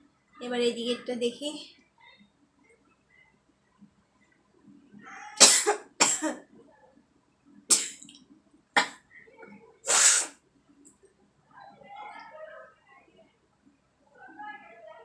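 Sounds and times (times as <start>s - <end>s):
person sneezing: 5.4s - 6.2s, 9.9s - 10.3s.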